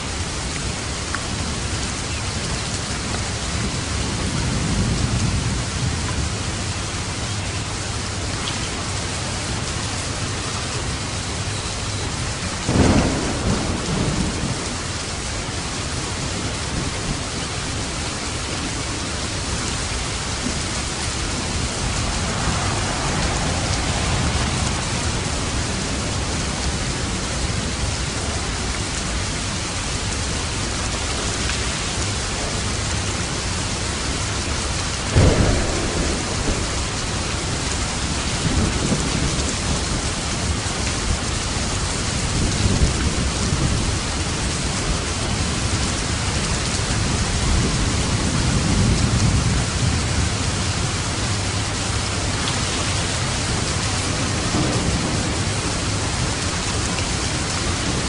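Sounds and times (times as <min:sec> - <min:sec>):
heavy rain: 0:00.0 - 0:58.0
thunder: 0:11.4 - 0:28.7, 0:33.6 - 0:58.0.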